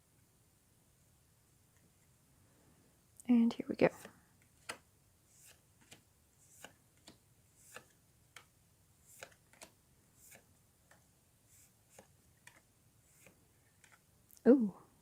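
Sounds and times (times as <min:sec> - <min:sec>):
cards flipping and sliding: 0:03.9 - 0:14.2.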